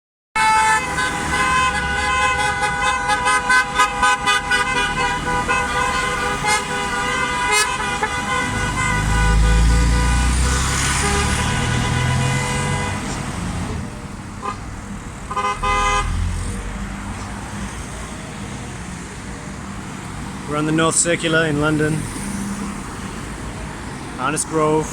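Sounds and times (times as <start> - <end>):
car horns honking: 0.4 - 13.5, 14.3 - 16.4
road traffic: 0.4 - 24.9
passing vehicle rumble: 0.6 - 24.9.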